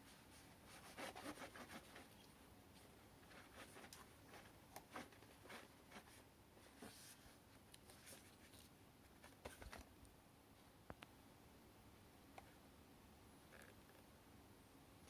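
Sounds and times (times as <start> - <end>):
light rubbing of handling: 0.0 - 9.9.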